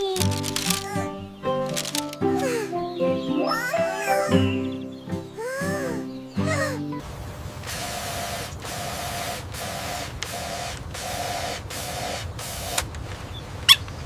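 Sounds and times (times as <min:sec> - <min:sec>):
short musical tone: 0:02.7 - 0:05.2
machine hissing and humming: 0:07.0 - 0:12.8.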